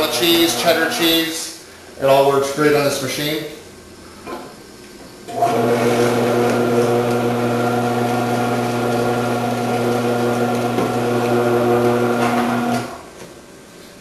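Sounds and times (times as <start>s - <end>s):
electric motor humming: 0.0s - 1.2s, 5.3s - 13.0s.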